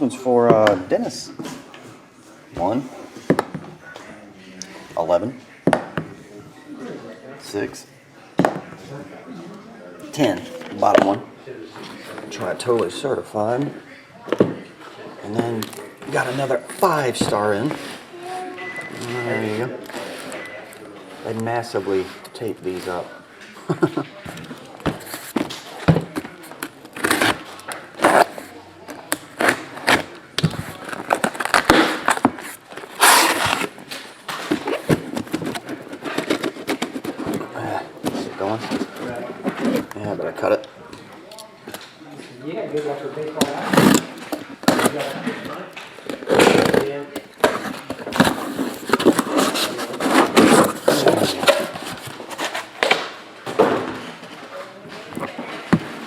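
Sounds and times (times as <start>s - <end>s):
tape tearing: 24.4s - 28.5s, 29.1s - 38.9s, 43.5s - 45.2s, 46.0s - 53.1s
packing tape and cardboard scraping: 24.8s - 28.5s, 29.1s - 39.9s, 43.5s - 45.2s, 46.0s - 52.9s
packing tape cut and pulled off: 26.9s - 28.5s, 29.1s - 33.8s.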